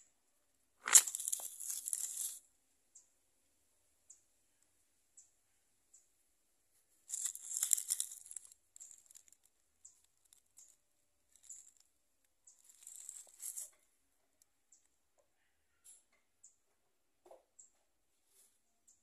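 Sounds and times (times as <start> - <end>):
rustling crinkling handling noise: 0.8 - 2.4, 7.1 - 9.5, 12.6 - 13.8.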